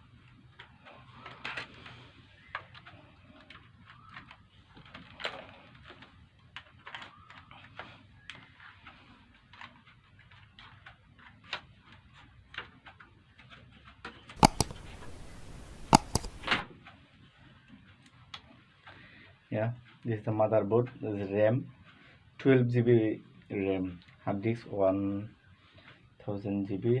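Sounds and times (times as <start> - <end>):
case clips snapping: 14.4 - 16.7
plastic laptop cover clicks: 14.4 - 16.7.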